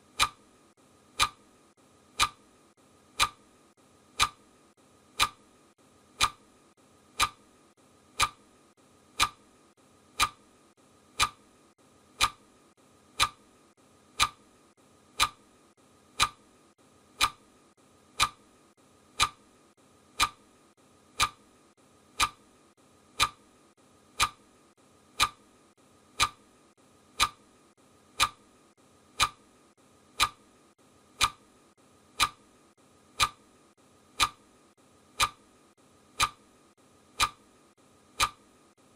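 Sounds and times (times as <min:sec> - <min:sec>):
clock ticking: 0:00.0 - 0:00.5, 0:01.1 - 0:01.5, 0:02.1 - 0:02.5, 0:03.1 - 0:03.5, 0:04.1 - 0:04.5, 0:05.1 - 0:05.5, 0:06.1 - 0:06.4, 0:07.1 - 0:07.5, 0:08.1 - 0:08.5, 0:09.1 - 0:09.5, 0:10.1 - 0:10.5, 0:11.1 - 0:11.5, 0:12.1 - 0:12.5, 0:13.1 - 0:15.5, 0:16.1 - 0:16.5, 0:17.1 - 0:17.4, 0:18.1 - 0:19.5, 0:20.1 - 0:20.5, 0:21.1 - 0:21.5, 0:22.1 - 0:22.5, 0:23.1 - 0:23.5, 0:24.1 - 0:24.4, 0:25.1 - 0:25.5, 0:26.1 - 0:26.4, 0:27.1 - 0:27.5, 0:28.1 - 0:28.5, 0:29.1 - 0:29.5, 0:30.1 - 0:30.4, 0:31.1 - 0:31.5, 0:32.1 - 0:32.5, 0:33.2 - 0:33.5, 0:34.2 - 0:34.4, 0:35.2 - 0:35.4, 0:36.2 - 0:36.4, 0:37.2 - 0:37.4, 0:38.2 - 0:38.4.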